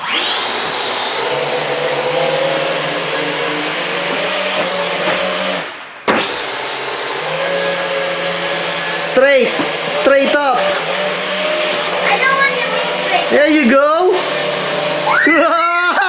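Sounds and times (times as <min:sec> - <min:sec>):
toy drone motors whirring: 0:00.0 - 0:16.0
sharp knock: 0:06.0 - 0:06.4.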